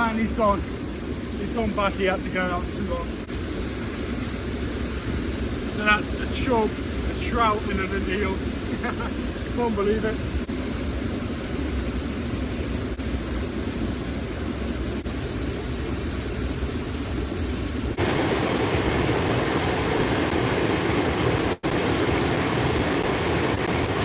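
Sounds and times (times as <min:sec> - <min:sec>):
stream water rushing: 0:00.0 - 0:10.6, 0:18.0 - 0:24.0.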